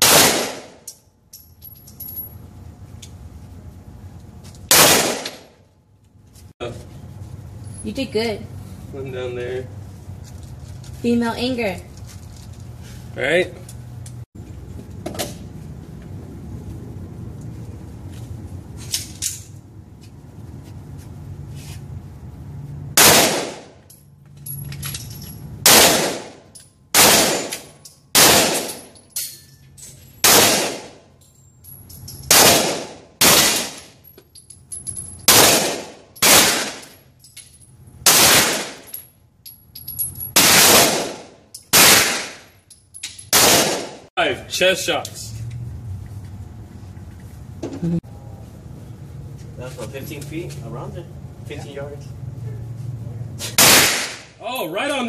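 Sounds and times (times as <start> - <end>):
gunshots: 0.0 - 0.8, 4.7 - 5.5, 23.0 - 23.8, 25.6 - 28.8, 30.2 - 31.0, 32.3 - 33.8, 35.3 - 36.8, 38.0 - 38.8, 40.4 - 42.5, 43.3 - 44.1, 53.6 - 54.4.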